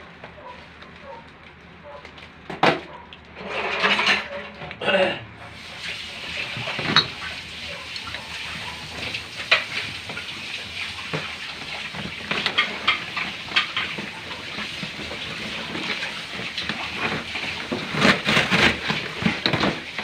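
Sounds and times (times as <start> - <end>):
packaging rustling and crinkling: 13.8 - 20.0.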